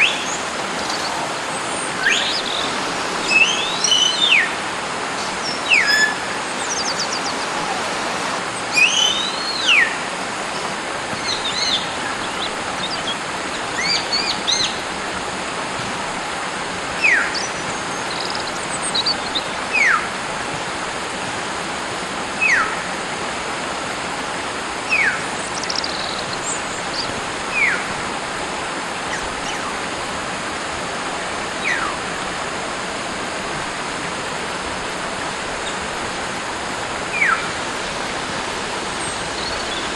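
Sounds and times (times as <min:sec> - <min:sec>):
steady background hiss: 0:00.0 - 0:39.9
bird whistling: 0:02.0 - 0:02.6, 0:03.2 - 0:04.6, 0:05.4 - 0:07.9, 0:08.7 - 0:10.0.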